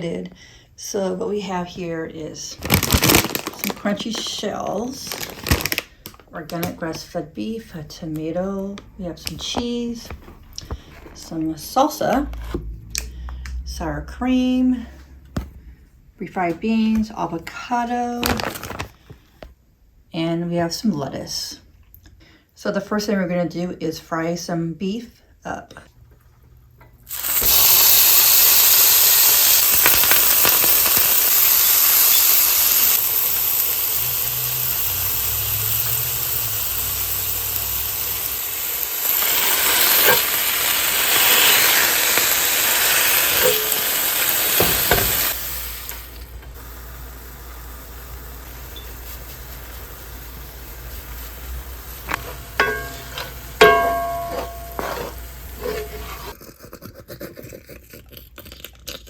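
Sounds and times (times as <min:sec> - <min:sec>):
meat sizzling in a pan: 0:27.1 - 0:56.4
utensil clinking on a pan: 0:52.2 - 0:56.2.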